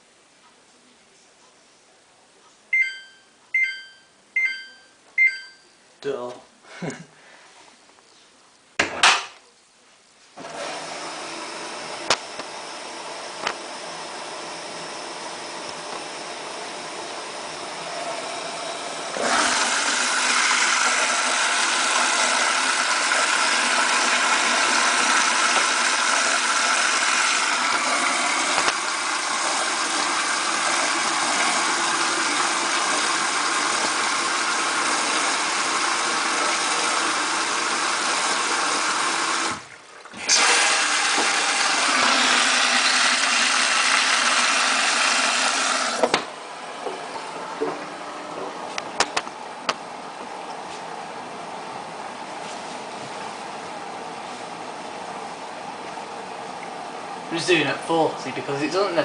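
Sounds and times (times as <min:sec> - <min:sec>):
water rushing into washing machine: 0:10.4 - 0:46.8.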